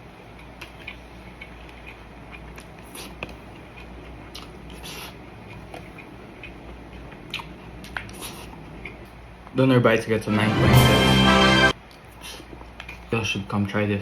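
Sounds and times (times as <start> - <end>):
person chewing: 0.3 - 9.2.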